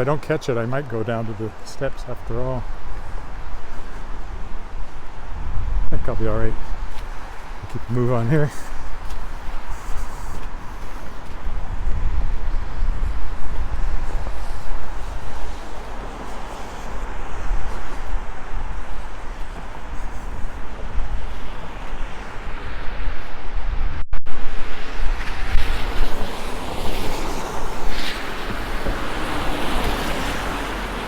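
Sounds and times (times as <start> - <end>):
wind buffeting microphone: 0.0 - 31.0
vehicles passing on wet street: 24.8 - 31.0.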